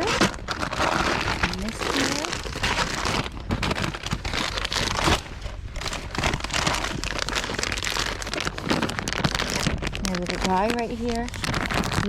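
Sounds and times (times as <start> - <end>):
rustling handling noise: 0.0 - 12.0.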